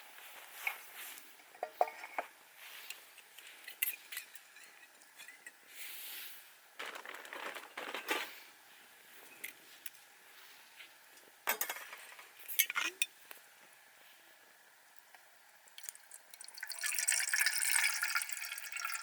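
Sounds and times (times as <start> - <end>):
metal cookware clinking: 1.5 - 2.3, 11.5 - 13.1
scraping and rustling: 6.8 - 8.6, 11.5 - 13.0.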